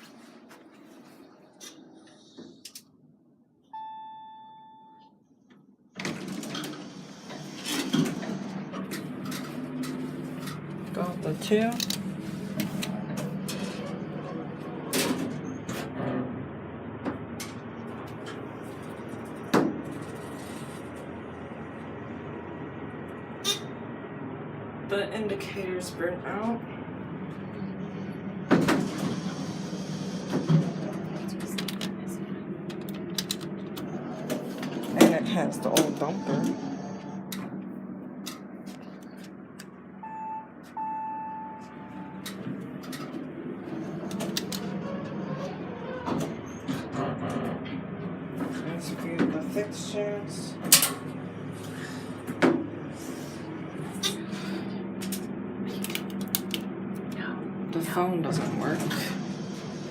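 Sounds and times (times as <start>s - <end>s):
elevator beeper: 3.7s - 5.2s, 35.2s - 37.4s, 40.0s - 42.4s
elevator car running: 5.9s - 59.9s
steady low hum: 7.1s - 59.9s.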